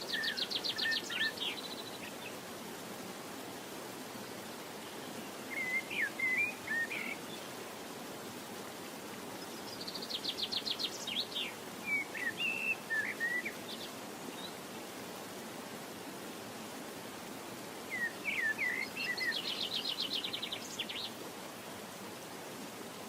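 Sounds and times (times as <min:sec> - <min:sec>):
songbird singing and trilling: 0:00.0 - 0:02.3, 0:05.0 - 0:07.5, 0:09.4 - 0:14.6, 0:17.9 - 0:21.2
steady hiss: 0:00.0 - 0:23.0.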